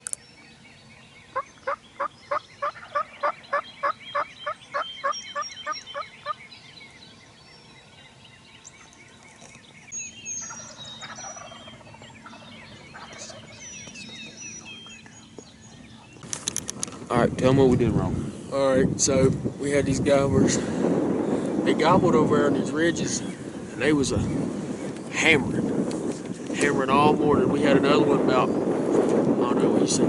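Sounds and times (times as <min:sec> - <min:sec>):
songbirds chirping faintly: 0:00.0 - 0:30.0
turkey yelping: 0:01.7 - 0:06.4, 0:10.4 - 0:14.7.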